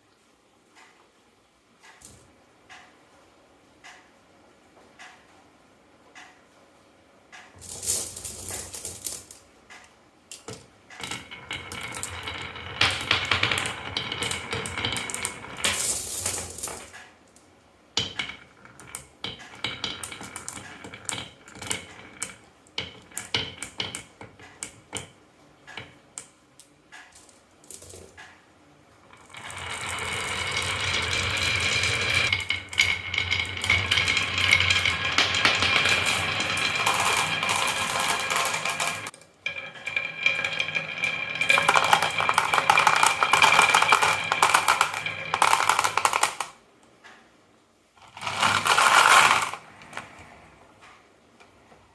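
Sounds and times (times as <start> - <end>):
marbles clattering down wooden run: 7.6 - 9.4, 11.0 - 17.1, 18.0 - 26.0, 29.1 - 46.6, 48.0 - 50.4.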